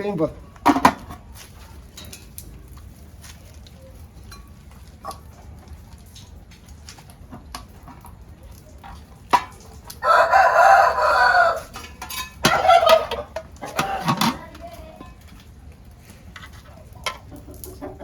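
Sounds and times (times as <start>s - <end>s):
rooster crowing: 10.0s - 11.8s.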